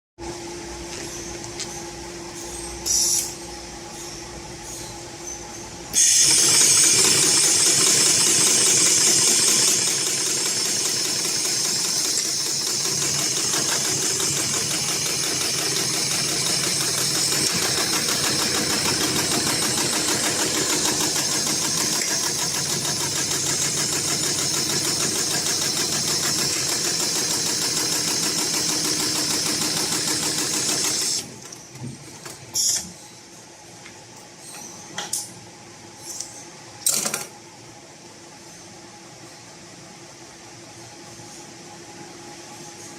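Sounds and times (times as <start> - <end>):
industrial sewing machine running: 6.0 - 31.3.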